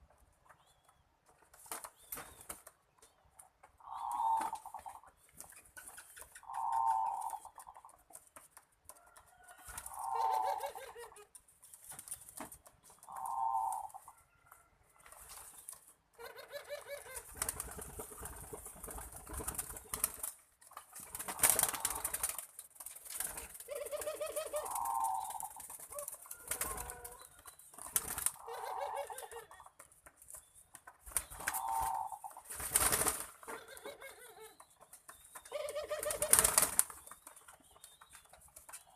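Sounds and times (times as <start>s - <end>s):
doves cooing: 3.8s - 5.1s, 6.4s - 8.0s, 9.7s - 11.3s, 13.0s - 14.1s, 16.2s - 17.4s, 23.3s - 29.7s, 31.3s - 34.8s, 35.4s - 37.0s
wing flapping: 17.0s - 27.2s, 27.8s - 28.5s, 31.0s - 33.4s, 35.5s - 37.4s.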